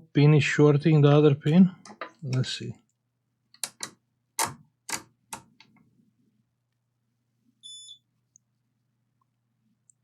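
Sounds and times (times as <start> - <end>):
multimeter beep: 7.6 - 8.1.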